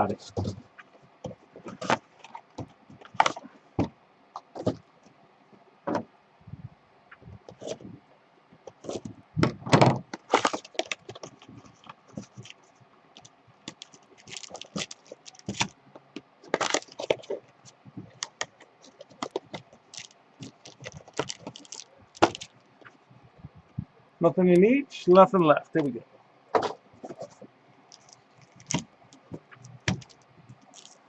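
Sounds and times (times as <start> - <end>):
cardboard and wrapper crackling: 10.1 - 15.8, 16.4 - 22.6, 26.6 - 31.0.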